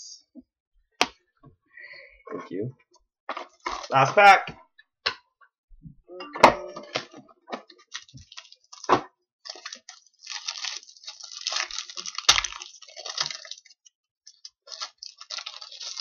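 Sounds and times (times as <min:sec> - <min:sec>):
wrapper crinkling: 0:03.4 - 0:03.9, 0:07.7 - 0:16.0.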